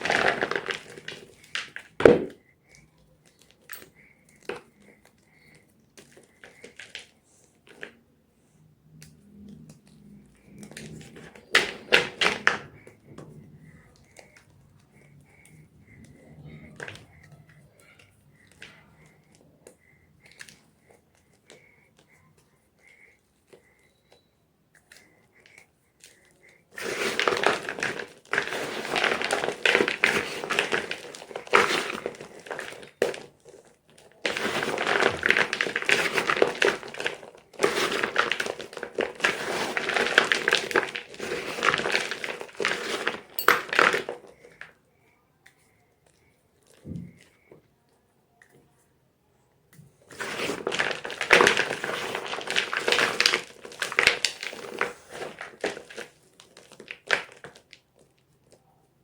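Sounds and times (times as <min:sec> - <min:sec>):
chalk crunching and crumbling: 0:00.0 - 0:08.0, 0:24.8 - 0:44.1, 0:50.0 - 0:57.6.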